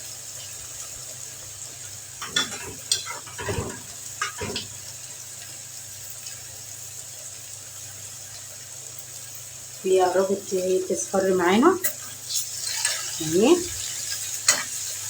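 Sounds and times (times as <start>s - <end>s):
garlic sizzling in a pan: 0.0s - 15.0s
spoon knocking against pan: 2.2s - 4.8s.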